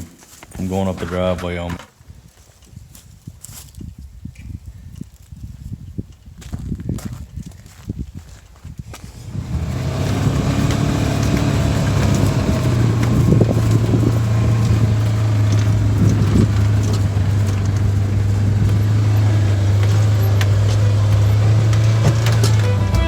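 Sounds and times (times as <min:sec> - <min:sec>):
vehicle engine running: 0:09.1 - 0:23.0.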